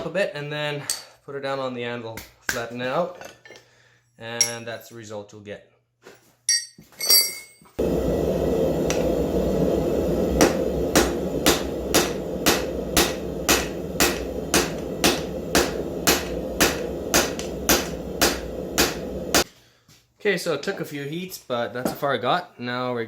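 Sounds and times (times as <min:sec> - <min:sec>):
continuous roar: 0:07.8 - 0:19.5
hammer striking hot steel bar: 0:08.8 - 0:09.3, 0:10.1 - 0:19.5.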